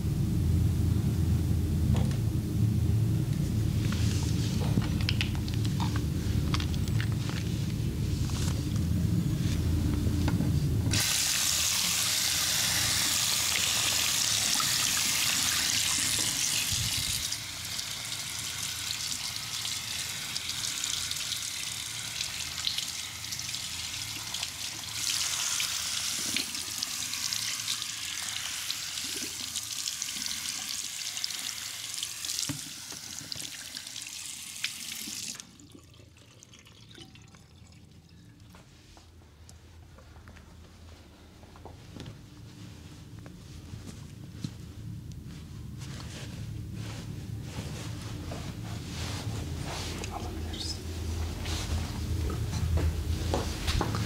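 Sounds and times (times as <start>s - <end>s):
water running and splashing: 11.0s - 37.7s.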